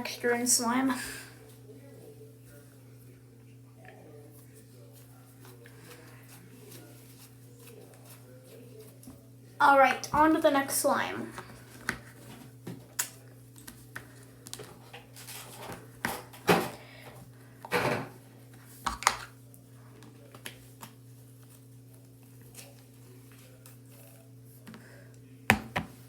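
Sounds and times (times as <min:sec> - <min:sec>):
plastic containers clicking and knocking: 0:18.8 - 0:19.3, 0:25.5 - 0:26.0.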